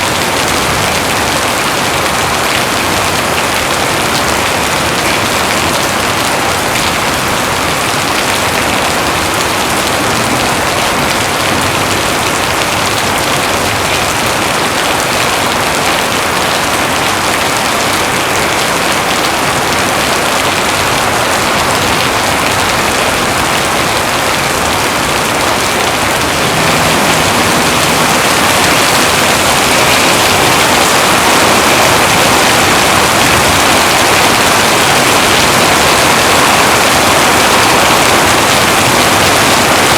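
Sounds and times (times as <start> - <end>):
heavy rain pouring: 0.0 - 39.9.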